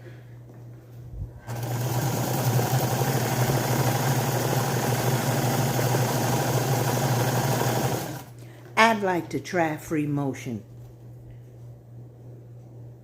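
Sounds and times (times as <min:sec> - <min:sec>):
motor hum: 0:00.4 - 0:09.2.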